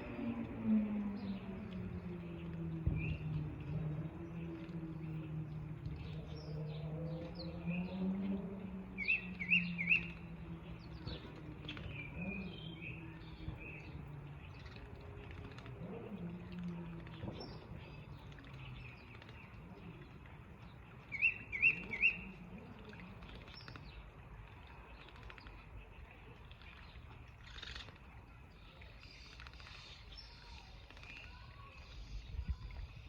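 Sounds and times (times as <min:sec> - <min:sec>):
songbird rising chirps: 0:00.0 - 0:15.1, 0:17.4 - 0:24.1
faint bird calls: 0:01.2 - 0:33.0.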